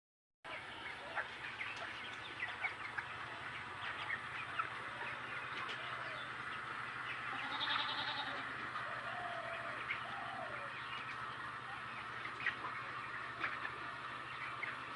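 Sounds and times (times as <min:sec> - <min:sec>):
chickens peeping and clucking: 0:00.5 - 0:14.9
low steady hum: 0:00.5 - 0:14.9
loud high chicken call: 0:07.1 - 0:10.8.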